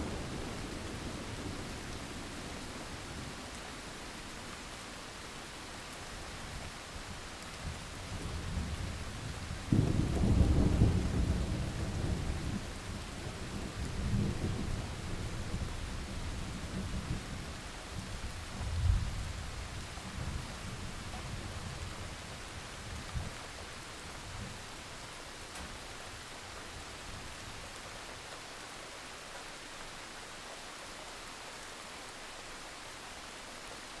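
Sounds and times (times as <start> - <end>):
steady rain: 0.0 - 34.0
thunder rumbling: 8.1 - 17.4.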